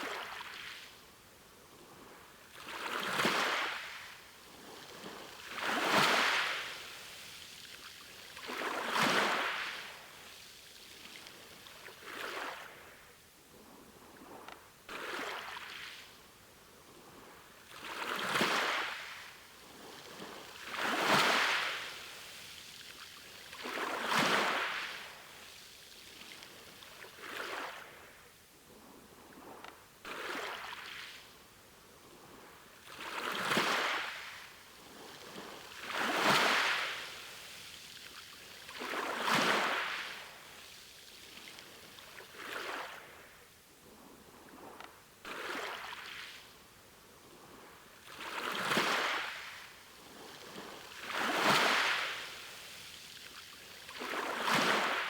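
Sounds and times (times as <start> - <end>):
sea waves washing ashore: 2.0 - 13.0, 17.0 - 28.2, 32.1 - 43.4, 47.3 - 55.0.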